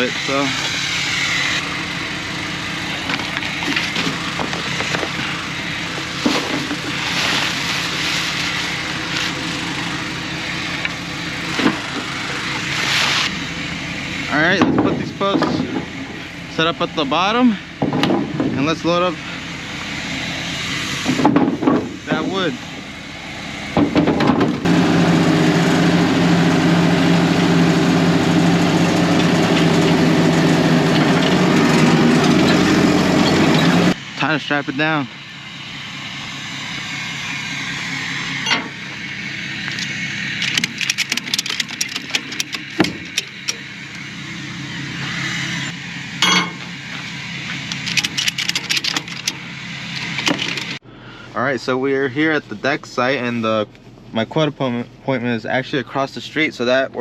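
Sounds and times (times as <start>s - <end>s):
vehicle engine idling: 0.0s - 57.0s
rustling noise: 3.1s - 10.0s, 11.4s - 13.4s.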